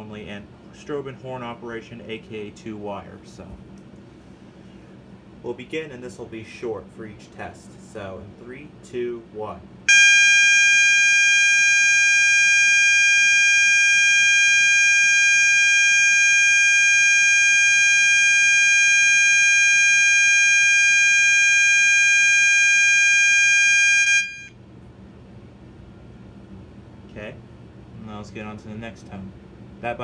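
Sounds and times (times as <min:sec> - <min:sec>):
horn strobe continuous alarm tone: 0:09.9 - 0:24.6.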